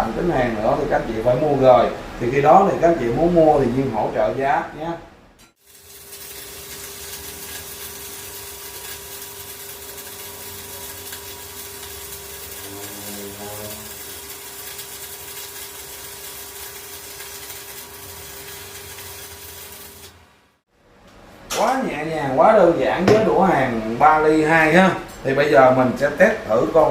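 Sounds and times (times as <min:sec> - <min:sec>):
welding arc hissing: 0:05.5 - 0:20.6.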